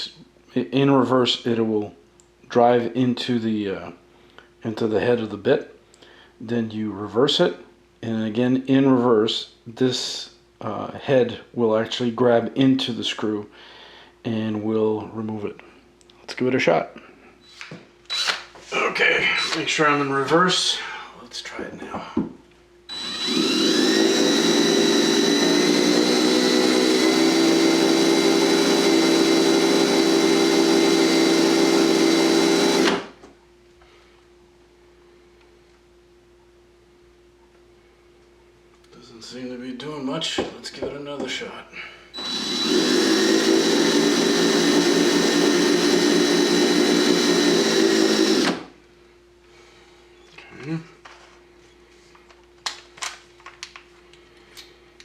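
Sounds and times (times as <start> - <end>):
drill running: 18.1 - 18.4, 19.4 - 19.7, 22.9 - 33.2, 42.2 - 48.8.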